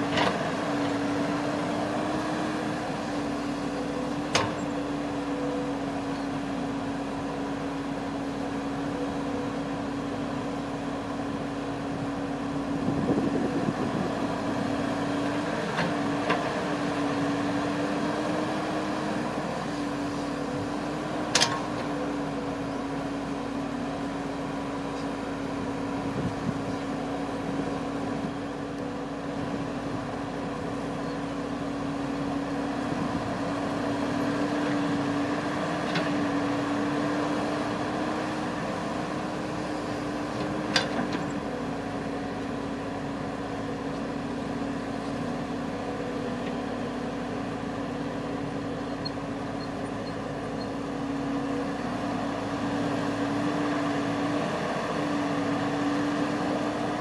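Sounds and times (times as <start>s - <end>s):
harvester engine humming: 0.0s - 57.0s.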